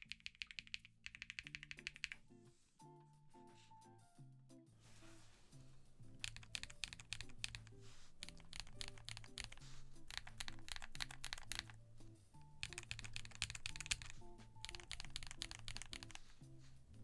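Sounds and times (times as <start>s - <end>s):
mechanical keyboard typing: 0.0s - 2.2s, 6.1s - 16.8s.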